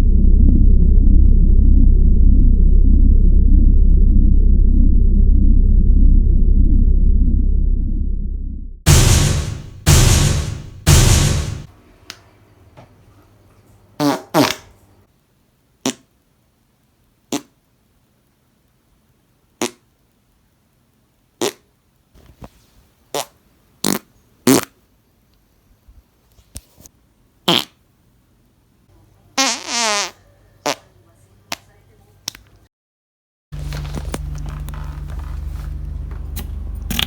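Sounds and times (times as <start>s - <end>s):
short farts: 14.0s - 14.7s, 15.8s - 16.1s, 17.3s - 17.5s, 19.6s - 19.8s, 21.4s - 21.6s, 23.1s - 24.8s, 27.5s - 27.8s, 29.4s - 30.8s.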